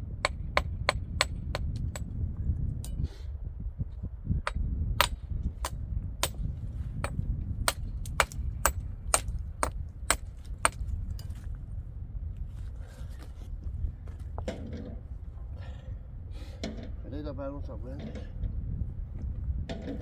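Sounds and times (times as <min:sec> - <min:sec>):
hammer striking nails into wood: 0:04.5 - 0:10.9.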